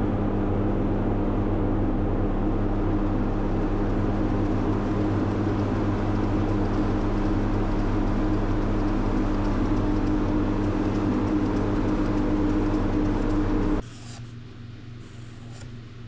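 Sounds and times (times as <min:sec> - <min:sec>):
electric motor humming: 0:01.8 - 0:13.8.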